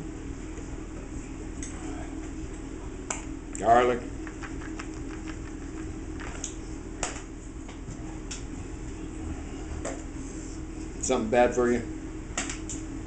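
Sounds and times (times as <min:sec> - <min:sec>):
microwave oven humming: 0:00.0 - 0:13.0.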